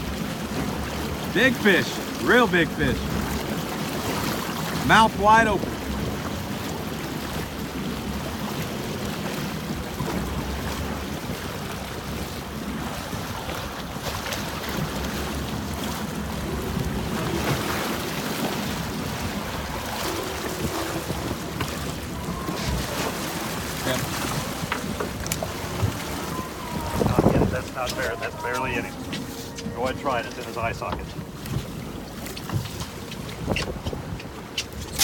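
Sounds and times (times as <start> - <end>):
water washing against boat: 0.0 - 35.0
wind on microphone: 15.8 - 29.8, 32.4 - 35.0.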